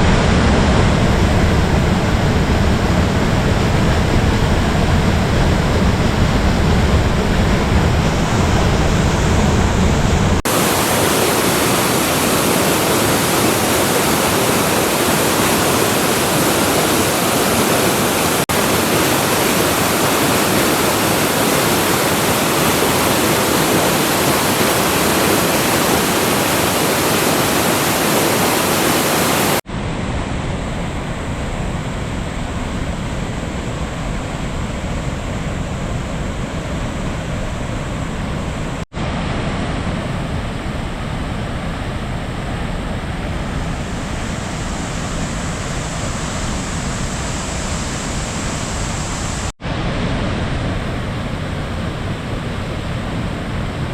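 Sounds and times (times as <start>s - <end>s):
waterfall rushing: 0.0s - 29.6s.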